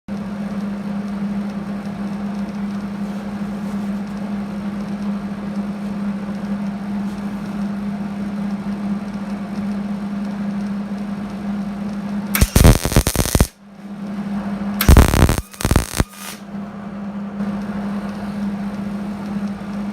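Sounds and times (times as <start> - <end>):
welding arc crackling: 12.4 - 13.6, 14.8 - 16.4
machine hum: 12.4 - 19.9.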